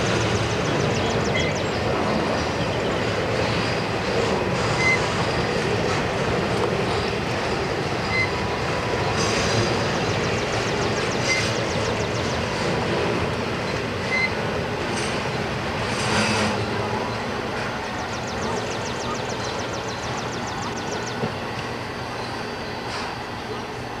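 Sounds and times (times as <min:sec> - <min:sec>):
train rolling on rails: 0:00.0 - 0:24.0
high wheel squeals: 0:02.4 - 0:06.0, 0:07.0 - 0:12.4, 0:14.0 - 0:21.2.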